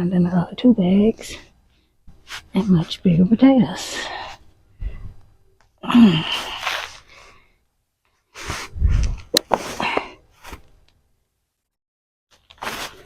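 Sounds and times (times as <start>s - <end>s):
person gasping: 5.8s - 7.6s.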